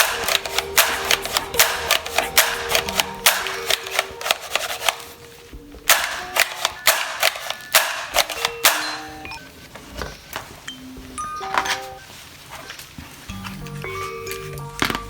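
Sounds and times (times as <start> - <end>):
plastic toy parts clicking: 0.0 - 5.1, 5.9 - 9.0.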